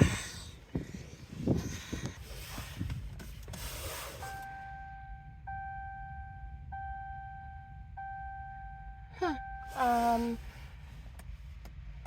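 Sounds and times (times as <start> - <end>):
electronic warning chime: 4.2 - 10.3.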